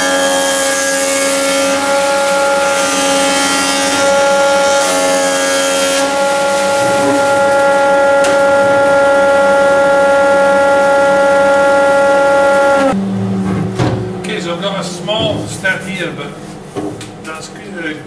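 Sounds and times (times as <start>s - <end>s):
hiss of timber being planed: 0.0s - 9.6s
surface planer whining: 0.0s - 17.8s.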